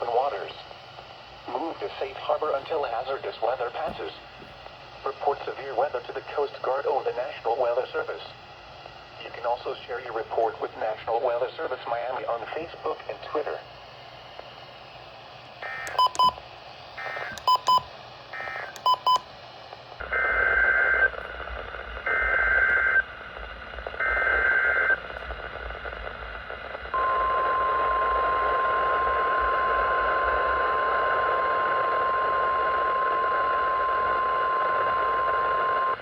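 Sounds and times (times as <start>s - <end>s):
radio static: 0.0s - 13.8s, 17.0s - 19.2s
steady warning tone: 15.6s - 16.4s, 17.0s - 19.3s.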